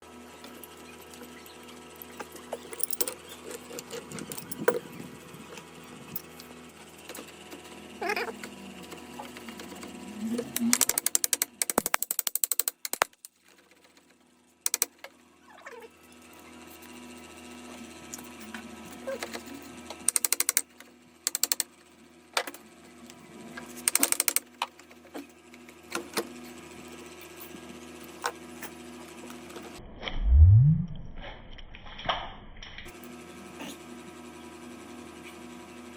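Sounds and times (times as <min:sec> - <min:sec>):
metal parts clicking and clinking: 0:02.2 - 0:04.9, 0:10.7 - 0:14.0, 0:14.7 - 0:14.9, 0:18.1 - 0:20.6, 0:21.3 - 0:21.7, 0:23.8 - 0:24.4
loud rising low whoosh: 0:29.8 - 0:32.9
steady hum: 0:29.8 - 0:32.9.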